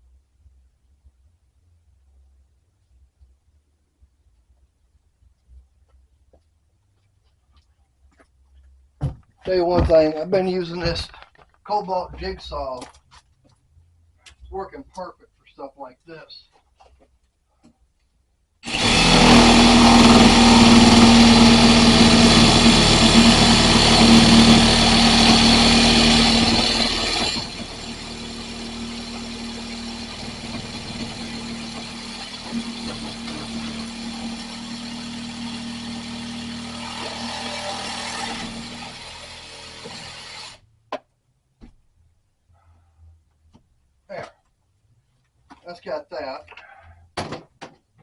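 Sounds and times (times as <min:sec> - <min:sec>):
jigsaw cutting wood: 0:18.6 - 0:40.6.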